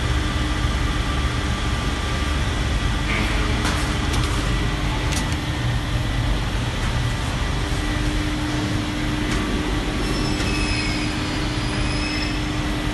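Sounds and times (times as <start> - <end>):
machine hum: 0.0 - 12.9
faint high whistles: 10.0 - 12.6.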